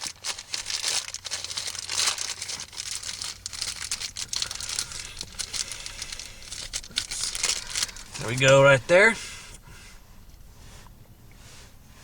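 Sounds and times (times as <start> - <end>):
packaging crinkling and tearing: 0.0 - 8.7.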